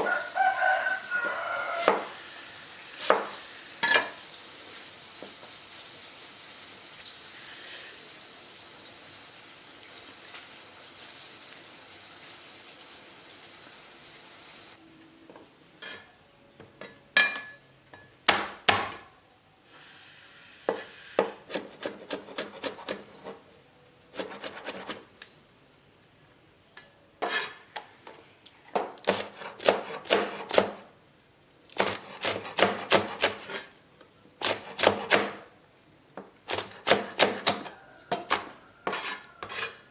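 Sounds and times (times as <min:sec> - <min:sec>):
food sizzling in frying oil: 0:00.0 - 0:14.8.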